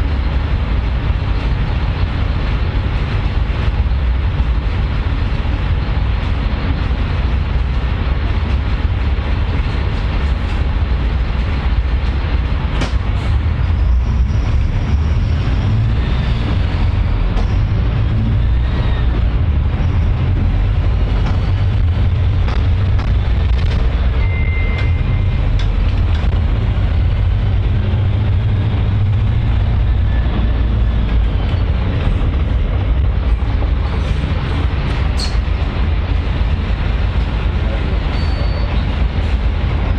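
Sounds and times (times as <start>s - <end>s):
vehicle low rumble: 0.0s - 39.9s.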